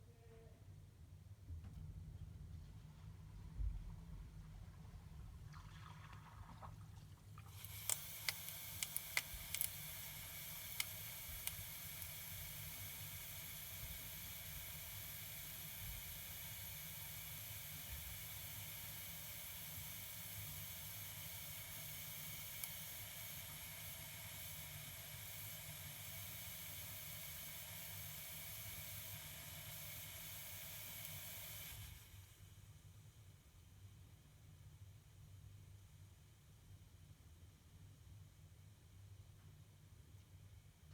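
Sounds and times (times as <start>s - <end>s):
water hissing into toilet cistern: 7.4s - 32.8s.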